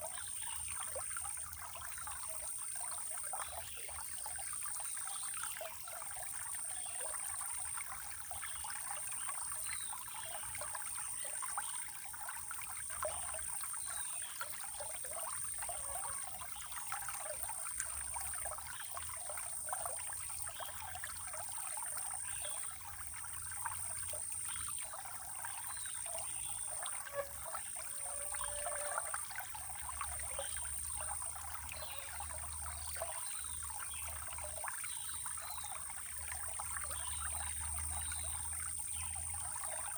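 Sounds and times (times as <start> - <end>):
water trickling and bubbling: 0.0 - 39.9.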